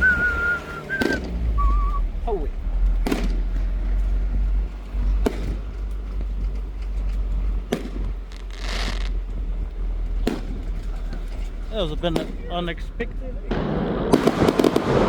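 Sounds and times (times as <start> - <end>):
fireworks bangs: 0.0 - 1.8, 2.7 - 15.0
low rumble: 0.0 - 15.0
fireworks hissing burst: 8.3 - 9.2, 13.5 - 15.0.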